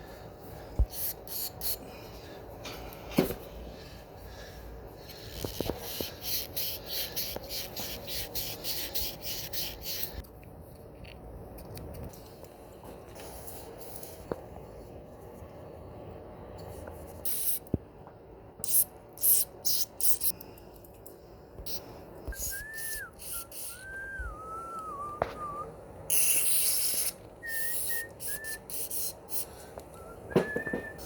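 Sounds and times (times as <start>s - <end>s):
person whistling a tune: 22.3s - 25.7s, 27.4s - 28.7s, 29.9s - 31.0s.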